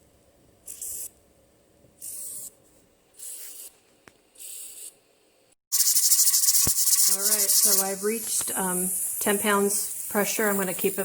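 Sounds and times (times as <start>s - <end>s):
pressure canner hissing steam puffs: 5.7s - 11.0s.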